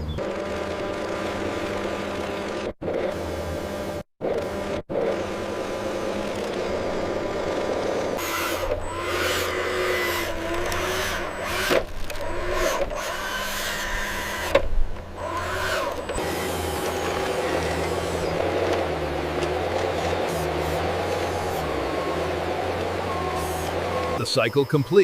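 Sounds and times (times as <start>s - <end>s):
whining motor tone: 0.0s - 24.3s
machinery humming: 5.4s - 25.0s.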